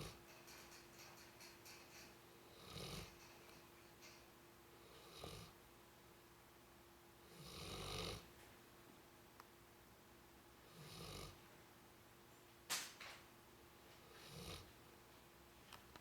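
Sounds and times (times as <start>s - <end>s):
faint steady hum: 0.0s - 16.0s
pet snoring softly: 2.4s - 3.4s, 4.8s - 5.6s, 7.2s - 8.3s, 10.6s - 11.4s, 14.0s - 14.7s.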